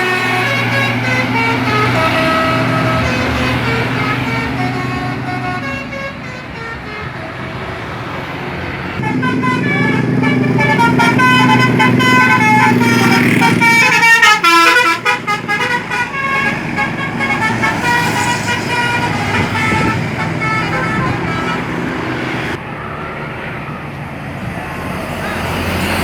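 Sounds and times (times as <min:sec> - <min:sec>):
bus musical horn tune: 0:00.0 - 0:08.0, 0:08.7 - 0:22.6
engine and road noise: 0:00.0 - 0:26.0.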